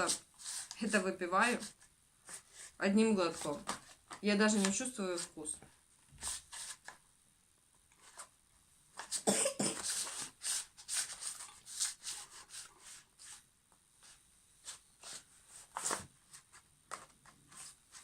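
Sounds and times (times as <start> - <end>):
person coughing: 9.2 - 10.0.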